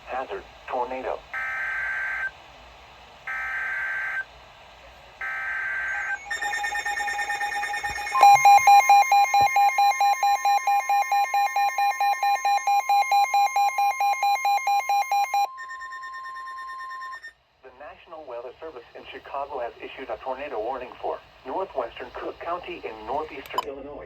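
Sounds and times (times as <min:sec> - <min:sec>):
fast pulsing electronic alarm: 0:01.4 - 0:02.3, 0:03.3 - 0:04.3, 0:05.2 - 0:17.3
steady warning tone: 0:03.2 - 0:04.3, 0:05.2 - 0:17.4
buzzy data header bursts: 0:05.2 - 0:14.7
loud pulsing beep: 0:05.3 - 0:17.3.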